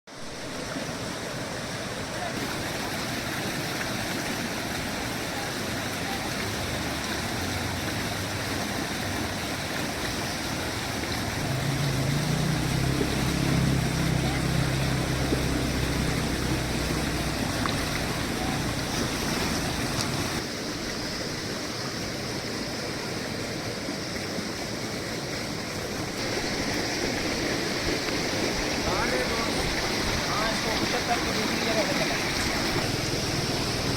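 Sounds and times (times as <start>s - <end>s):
rushing water: 0.1s - 33.9s
low engine hum: 6.6s - 20.4s, 25.7s - 33.9s.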